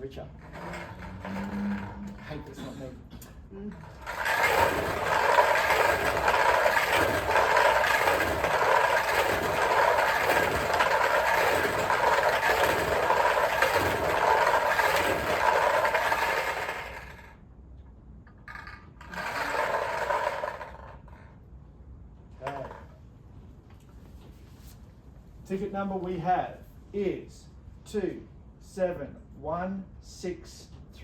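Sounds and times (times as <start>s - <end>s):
balls rattling in spinning barrel: 0.0s - 2.6s, 3.8s - 17.4s, 18.3s - 21.4s, 22.3s - 23.0s.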